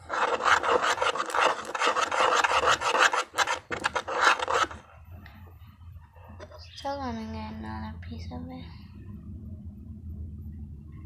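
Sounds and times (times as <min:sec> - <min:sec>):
rasping cutting strokes: 0:00.0 - 0:04.8.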